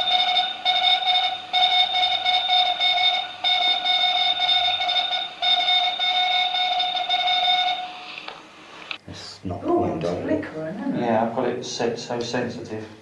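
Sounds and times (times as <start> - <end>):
electronic morse code beeps: 0.0 - 8.1.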